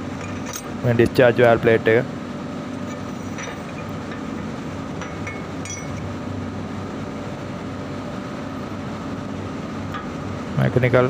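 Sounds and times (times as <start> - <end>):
low machinery hum: 0.0 - 11.0
light metal clinks: 2.8 - 6.1.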